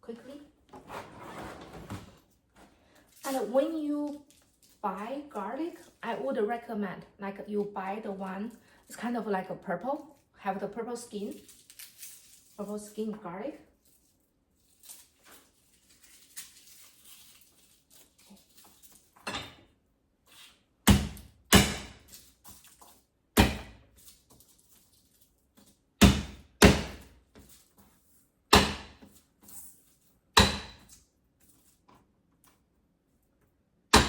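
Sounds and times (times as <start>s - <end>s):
garlic skin rustling: 13.7s - 19.2s
knife chopping on cutting board: 20.9s - 22.0s, 23.4s - 23.8s, 26.0s - 27.1s, 28.5s - 29.0s, 30.4s - 30.9s.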